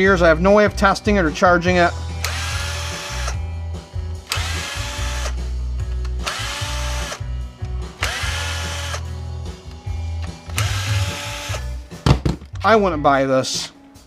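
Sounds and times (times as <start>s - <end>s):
power drill bursts: 2.2s - 3.4s, 4.3s - 5.4s, 6.2s - 7.2s, 8.0s - 9.0s, 10.6s - 11.6s.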